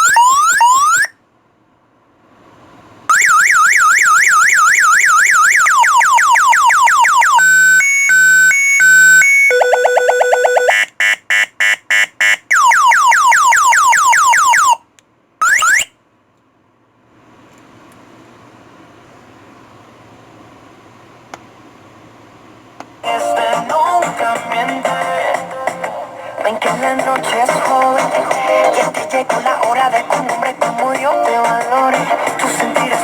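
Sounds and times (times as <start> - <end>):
electronic alarm siren: 0.0 - 1.2, 3.1 - 14.8, 15.4 - 15.9.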